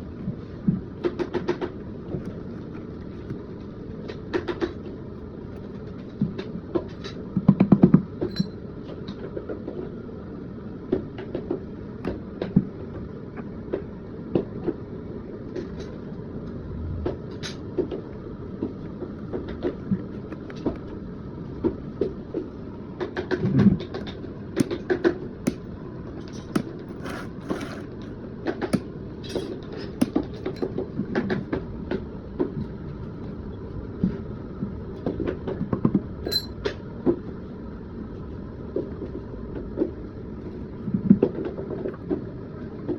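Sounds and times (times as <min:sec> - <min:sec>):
steady low rumble: 0:16.0 - 0:26.9
clicks and knocks of hand work: 0:23.1 - 0:25.7, 0:26.3 - 0:27.9.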